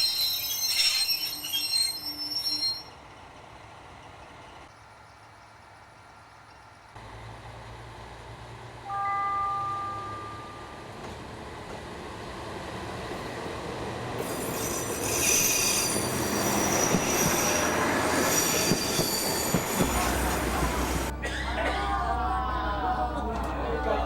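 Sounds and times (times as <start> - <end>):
wheel squeal: 0.0 - 3.0, 14.2 - 20.4
train running on rails: 0.0 - 21.8.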